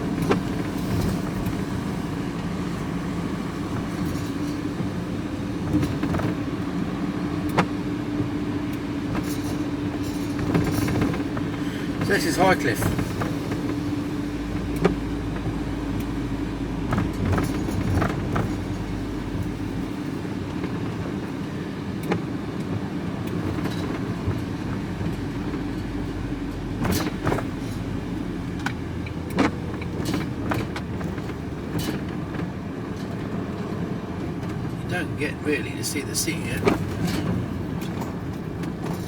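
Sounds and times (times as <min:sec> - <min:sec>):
vehicle engine and road noise: 0:00.0 - 0:39.0.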